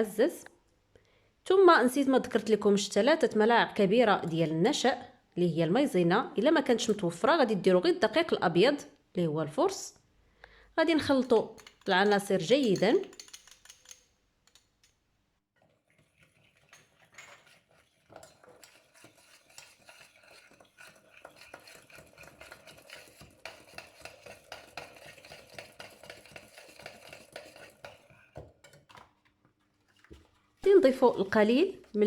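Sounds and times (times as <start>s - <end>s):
utensil beating mixture in bowl: 11.0s - 14.0s, 15.6s - 32.0s.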